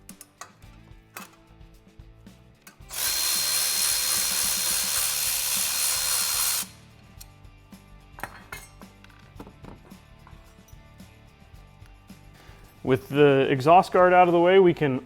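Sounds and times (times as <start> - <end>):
power tool running: 2.9 - 6.8.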